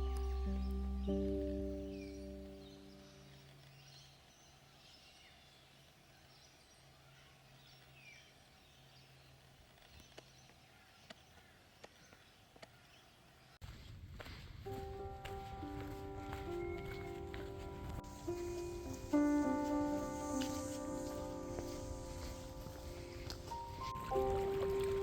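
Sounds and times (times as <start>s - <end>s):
music: 0.0s - 3.5s, 14.7s - 25.0s
distant birds chirping: 0.0s - 13.6s, 14.8s - 25.0s.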